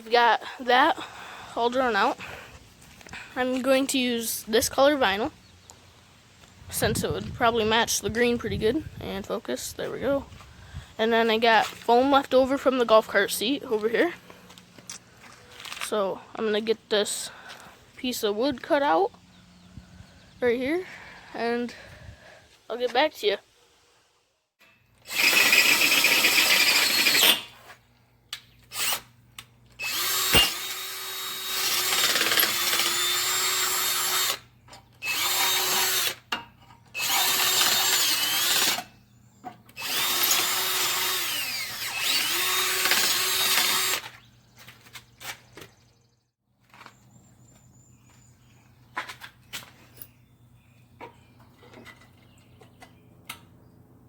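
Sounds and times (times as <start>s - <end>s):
power saw cutting board: 29.8s - 34.4s.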